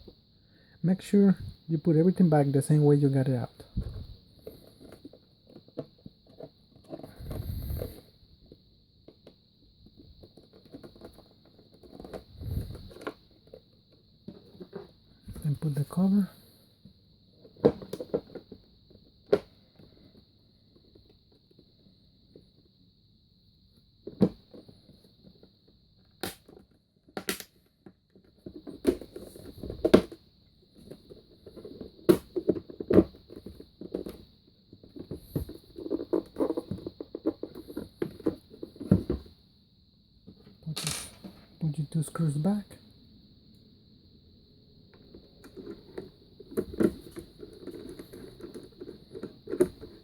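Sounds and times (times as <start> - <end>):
plastic rattling and scraping: 3.6 - 16.2, 17.3 - 22.5, 24.0 - 39.3, 44.9 - 50.0
plastic clicks and knocks: 26.2 - 30.2.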